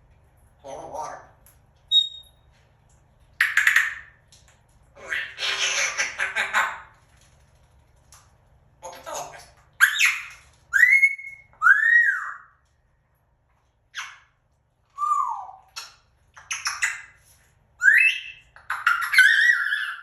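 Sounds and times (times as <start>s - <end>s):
parrot whistling: 1.9s - 2.3s, 9.8s - 12.5s, 17.8s - 20.0s
parrot squawking: 5.0s - 7.0s, 8.8s - 12.5s, 13.9s - 14.3s, 15.1s - 17.2s, 17.8s - 20.0s.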